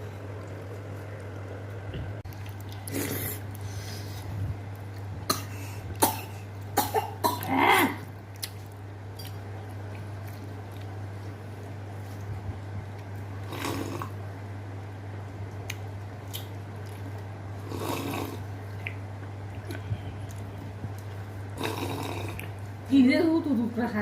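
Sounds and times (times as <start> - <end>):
steady low hum: 0.0 - 24.0
person coughing: 5.3 - 8.0.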